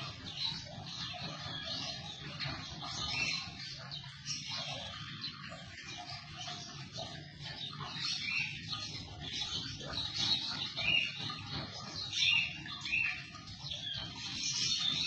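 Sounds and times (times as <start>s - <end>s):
bird chicks begging calls: 0.0s - 15.0s.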